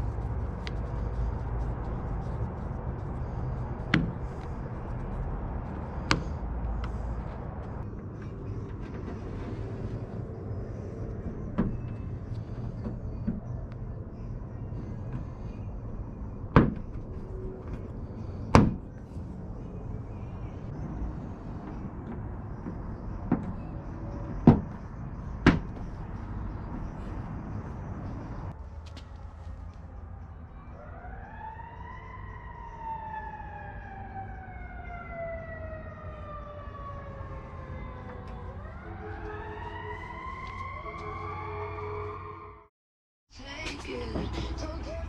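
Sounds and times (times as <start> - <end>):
steady low hum: 0.0 - 30.4.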